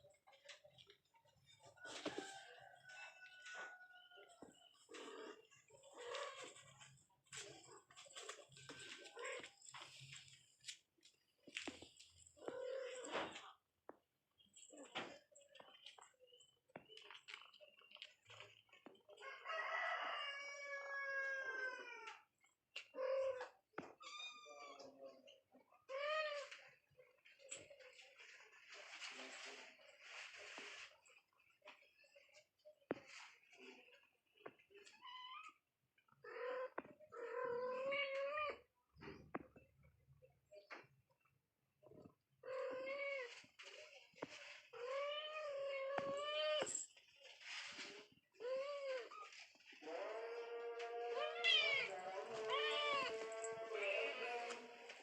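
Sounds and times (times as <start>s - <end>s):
cat meowing: 49.9s - 54.8s.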